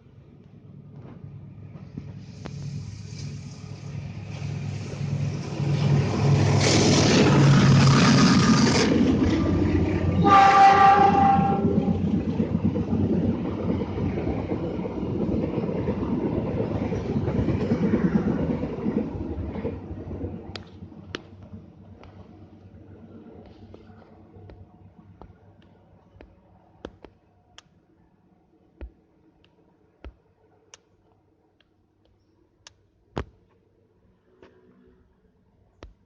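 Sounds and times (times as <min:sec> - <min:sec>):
train engine and wheel rumble: 0:00.0 - 0:36.0
train horn blast: 0:10.2 - 0:12.0.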